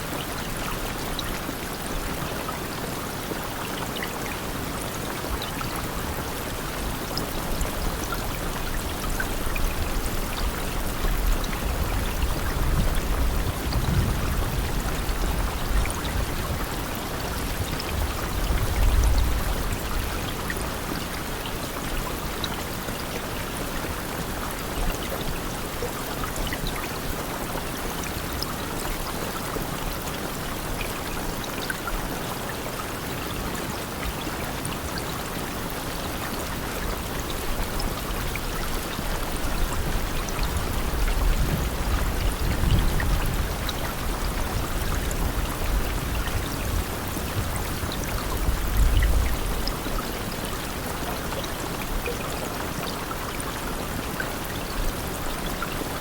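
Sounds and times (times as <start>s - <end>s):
rain falling: 0.0s - 56.0s.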